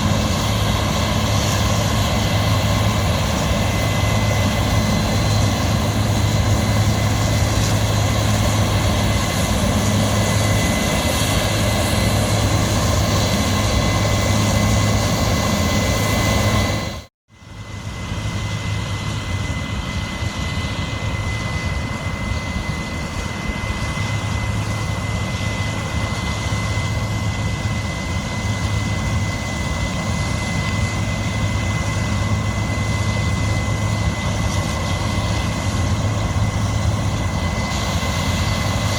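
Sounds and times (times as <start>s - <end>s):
engine and machinery noise: 0.0s - 38.9s.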